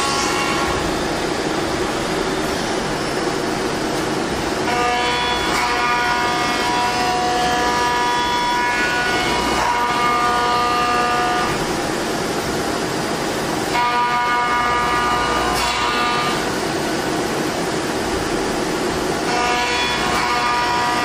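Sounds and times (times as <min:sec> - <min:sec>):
milling machine cutting noise: 0:00.0 - 0:11.9
high tonal whine: 0:00.0 - 0:16.6.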